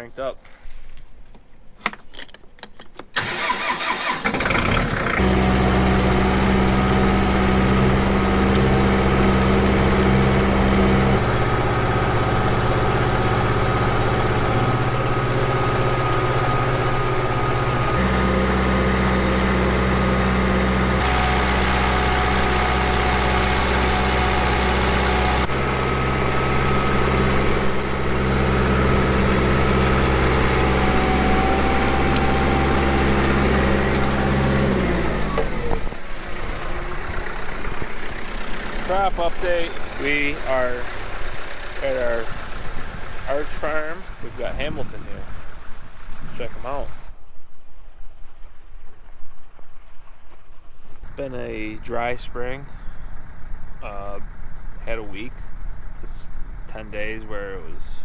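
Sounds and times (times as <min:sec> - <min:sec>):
tractor diesel engine running: 0:03.1 - 0:47.1, 0:51.1 - 0:58.0.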